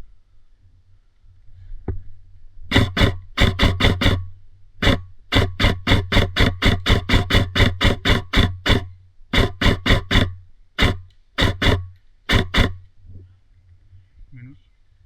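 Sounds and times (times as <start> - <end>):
low hum: 0.0 - 14.6.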